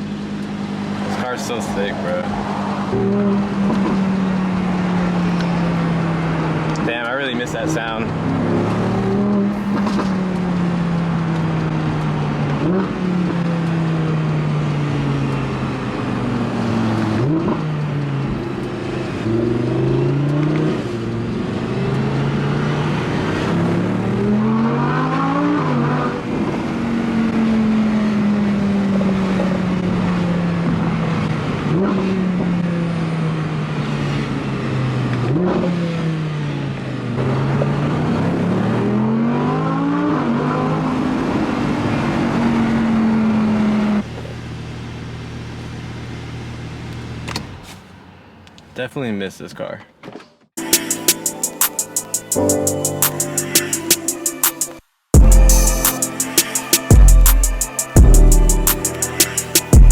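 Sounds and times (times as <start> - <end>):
car engine accelerating: 0.0 - 47.3.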